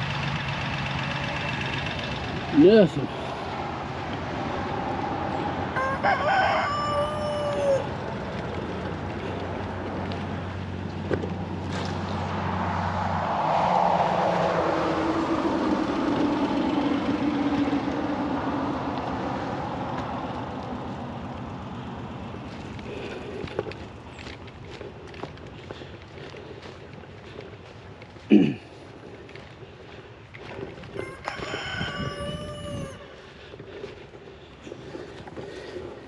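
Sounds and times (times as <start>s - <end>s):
rooster crowing: 5.7s - 8.0s, 30.9s - 33.2s
broad swell of noise: 12.0s - 22.0s.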